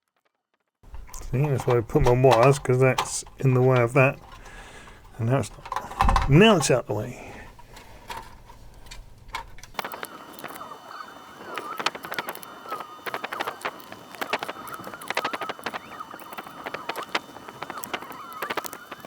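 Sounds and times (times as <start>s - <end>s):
screws clicking and scraping: 0.9s - 9.8s.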